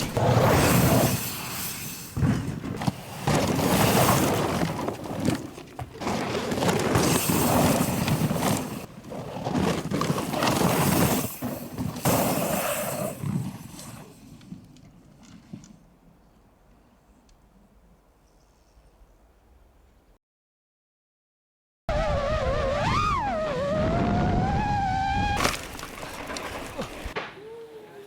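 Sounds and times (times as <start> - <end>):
bike tyres over rough ground: 0.0 - 16.2, 22.6 - 27.3.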